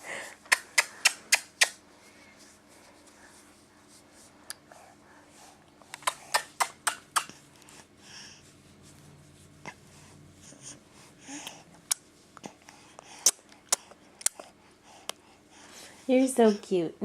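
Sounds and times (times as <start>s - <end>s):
baby mouth clicks: 0.5s - 1.8s, 5.9s - 7.4s
soft breathy sounds: 1.9s - 6.4s, 7.2s - 16.8s.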